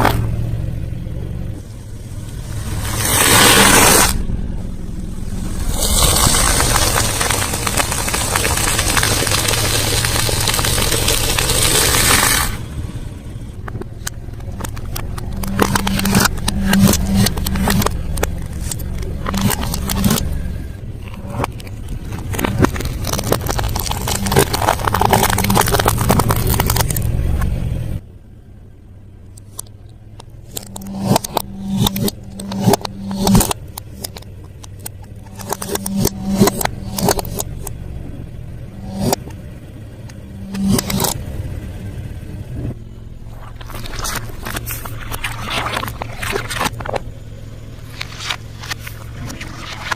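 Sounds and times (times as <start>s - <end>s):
low rumble: 0.0s - 49.9s
steady low hum: 0.0s - 49.9s
chewing crunchy food: 21.1s - 27.1s.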